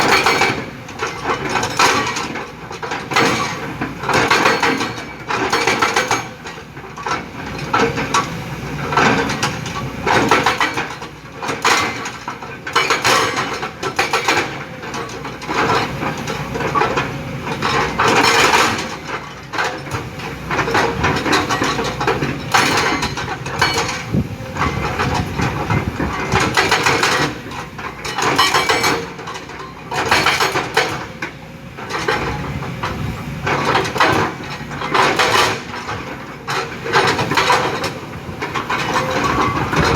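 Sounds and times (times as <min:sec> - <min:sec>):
excavator engine under load: 0:00.0 - 0:39.9
rock and steel clattering: 0:09.0 - 0:31.1.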